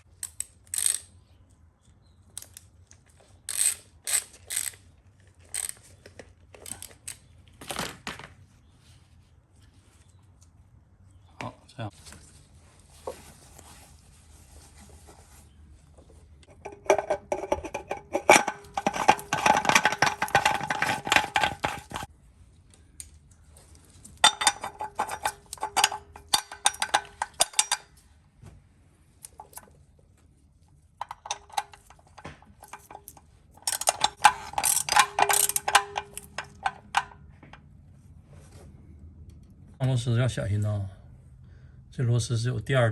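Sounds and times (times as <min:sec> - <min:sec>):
ratchet wrench clicking: 0:00.2 - 0:01.1, 0:03.5 - 0:04.8, 0:05.5 - 0:05.8, 0:32.7 - 0:36.7.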